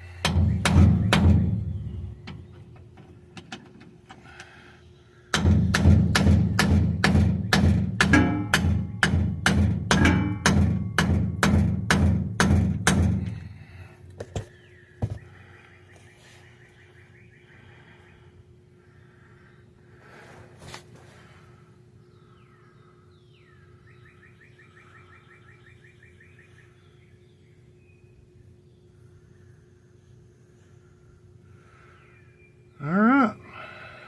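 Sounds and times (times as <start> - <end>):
hammer blows on metal: 5.3 - 13.4.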